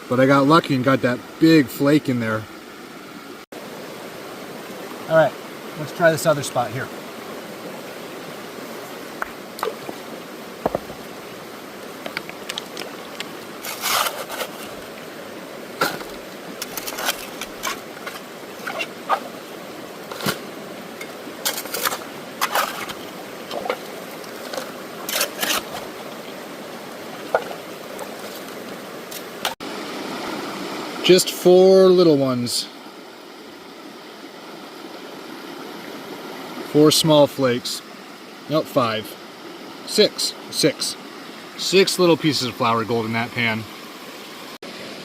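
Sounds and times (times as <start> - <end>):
stream rushing: 0.0 - 45.0
water sloshing: 8.6 - 29.6
stones scraping in a pan: 12.1 - 14.9, 15.8 - 19.3, 20.0 - 26.3.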